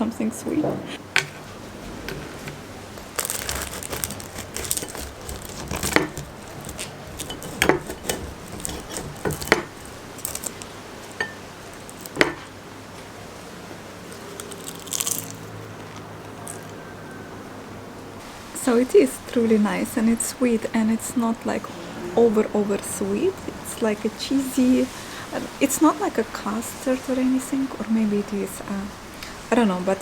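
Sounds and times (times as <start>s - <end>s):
paper wrapping crinkling: 2.1s - 12.2s.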